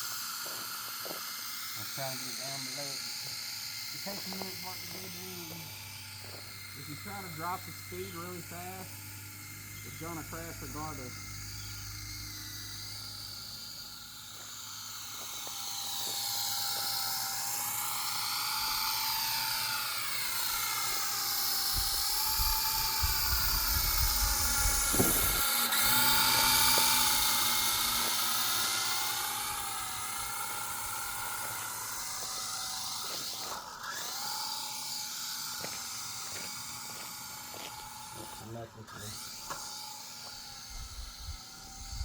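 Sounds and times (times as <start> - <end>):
wavering hiss: 0.0 - 33.4
rc helicopter rotor whine: 0.0 - 42.0.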